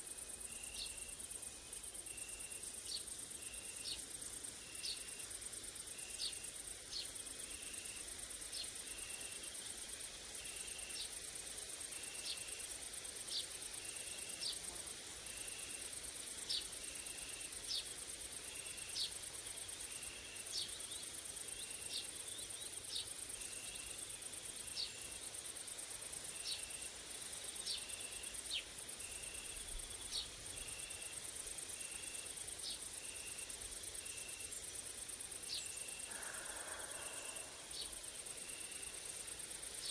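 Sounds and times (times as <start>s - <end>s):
high-pitched insect trill: 0.3s - 39.9s
short insect chirp: 18.5s - 39.9s.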